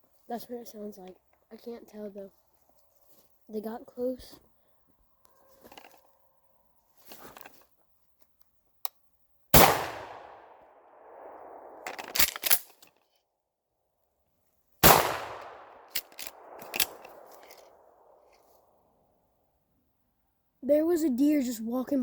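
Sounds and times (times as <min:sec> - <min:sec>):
gunshots with long echo: 0:09.6 - 0:12.3, 0:14.8 - 0:18.2
short clicks and clatter: 0:15.9 - 0:17.7.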